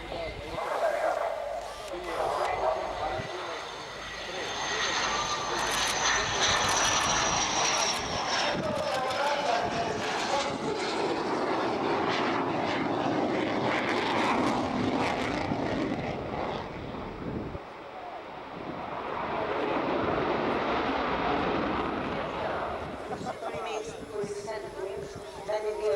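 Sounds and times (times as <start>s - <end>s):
jet engines roaring with whine: 0.0s - 25.9s.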